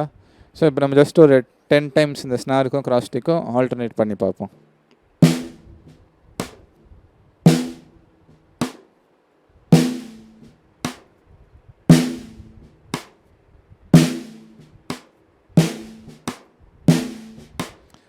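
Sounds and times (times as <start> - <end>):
snare drum strokes: 5.2 - 6.7, 7.5 - 8.0, 8.6 - 8.9, 9.8 - 11.1, 11.9 - 13.2, 14.0 - 17.9.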